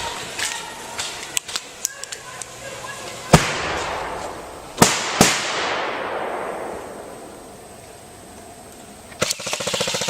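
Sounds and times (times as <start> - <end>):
long echo: 2.8 - 7.6
loud sharp bangs: 3.3 - 7.5.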